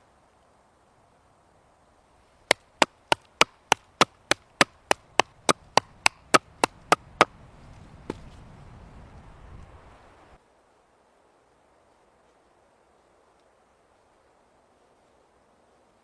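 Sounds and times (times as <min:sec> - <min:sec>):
chopping wood: 0:02.5 - 0:07.3.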